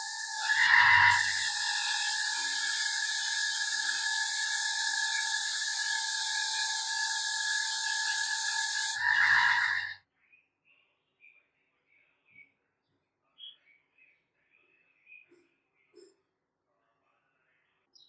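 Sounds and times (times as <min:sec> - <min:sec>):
power tool motor whining: 0:00.0 - 0:10.0.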